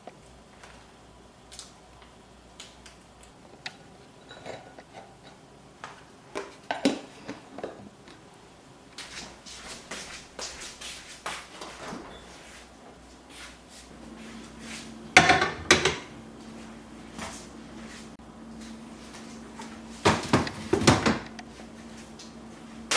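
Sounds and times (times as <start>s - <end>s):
dishes clattering: 4.2s - 5.3s, 15.2s - 16.1s
containers and dishes knocking: 15.2s - 16.1s.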